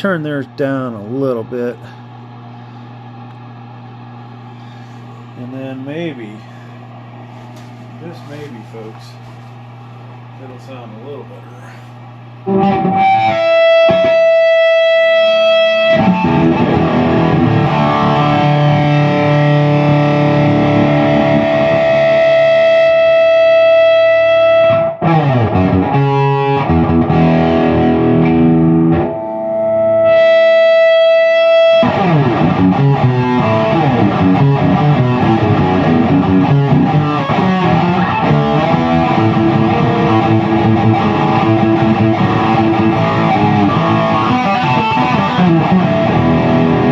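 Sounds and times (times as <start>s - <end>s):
distorted electric guitar: 12.4s - 46.9s.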